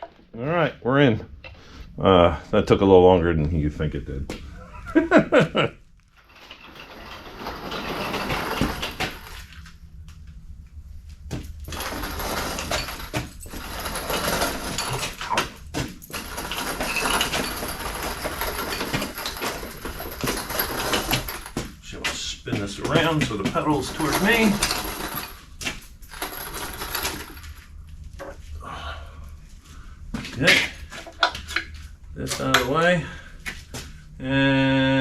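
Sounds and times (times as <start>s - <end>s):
metal parts and tools clinking: 6.2s - 9.6s, 11.7s - 21.7s, 22.8s - 27.6s.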